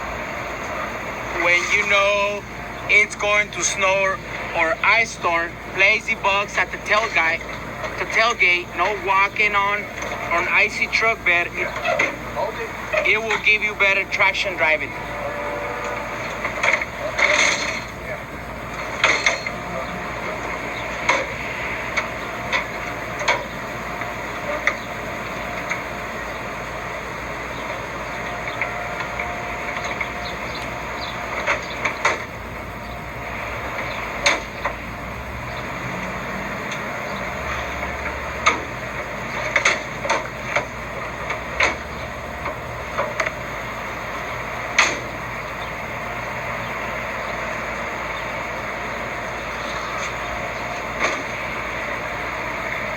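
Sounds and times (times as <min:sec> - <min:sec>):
steady background hiss: 0:00.0 - 0:52.9
sharp knocks and clicks: 0:31.3 - 0:32.3, 0:33.8 - 0:34.8, 0:38.0 - 0:40.7, 0:41.3 - 0:43.4, 0:44.7 - 0:45.1.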